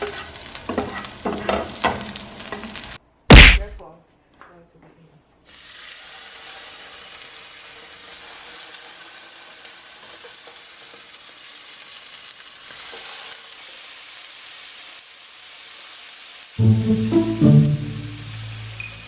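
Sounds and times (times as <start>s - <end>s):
food sizzling in frying pan: 0.0s - 3.0s, 5.5s - 19.0s.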